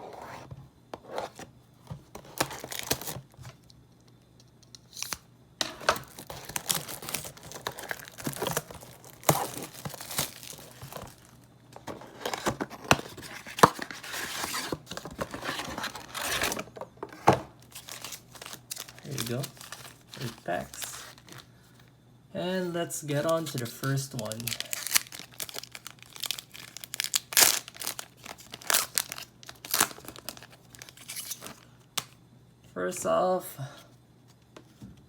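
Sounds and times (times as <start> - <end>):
cardboard box tearing and crinkling: 2.2 - 3.2, 6.0 - 11.3, 12.0 - 16.7, 17.8 - 21.2, 24.4 - 31.5.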